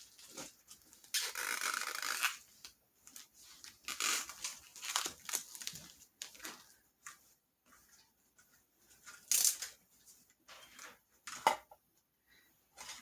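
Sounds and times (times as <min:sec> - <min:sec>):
packaging wrap rustling and crinkling: 0:00.0 - 0:07.2.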